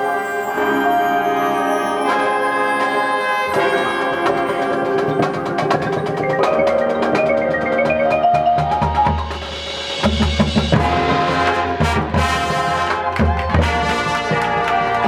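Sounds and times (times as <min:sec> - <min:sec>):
mallet percussion notes: 0:00.0 - 0:15.0
marching band held chords: 0:00.0 - 0:15.0.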